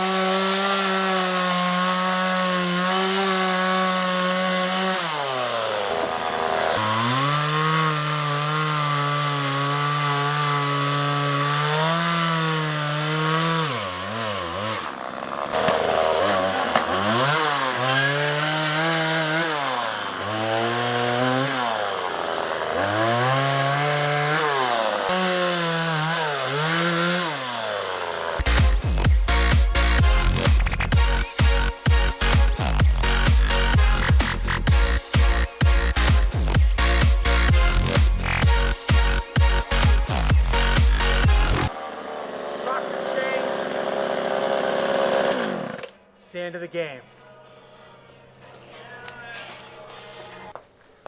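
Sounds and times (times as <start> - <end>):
chainsaw revving while cutting: 0.0 - 45.9.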